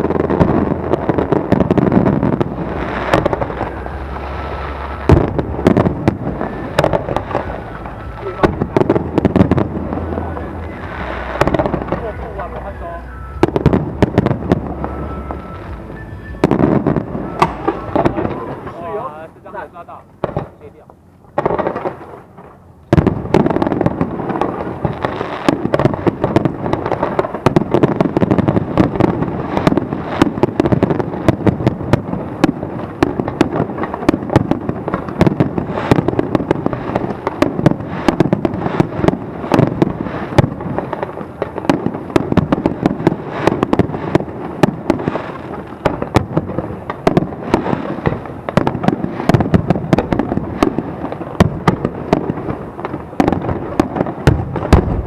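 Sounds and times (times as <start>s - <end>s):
low rumble: 0.0s - 25.2s, 54.4s - 55.0s
fireworks cracks and bangs: 0.0s - 55.0s.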